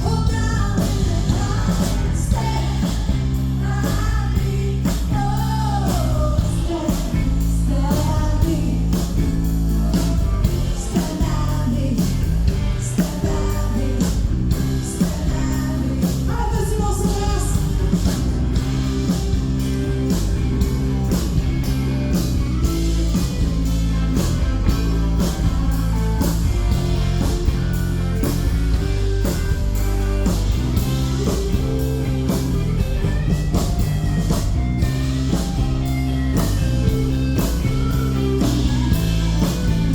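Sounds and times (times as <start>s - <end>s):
lead vocal singing: 0.0s - 18.0s
live country-rock band: 0.0s - 39.9s.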